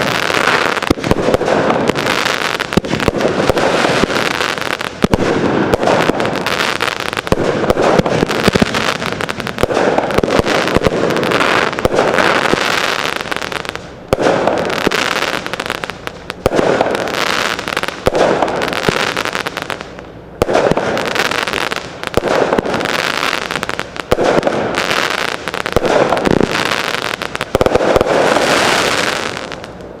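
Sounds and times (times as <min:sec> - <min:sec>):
fireworks crackling: 0:00.0 - 0:30.0
fireworks launching and banging: 0:00.0 - 0:30.0.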